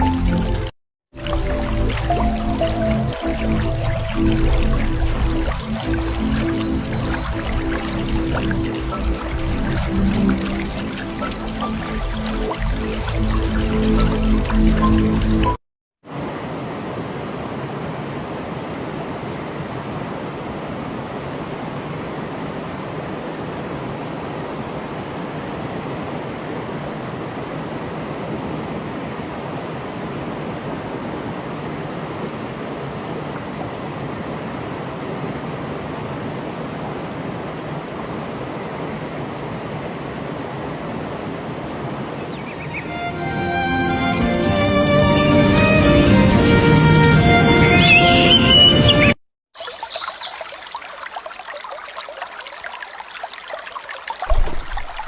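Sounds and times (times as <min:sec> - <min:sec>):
running water rushing: 0:00.0 - 0:46.6, 0:49.6 - 0:55.0.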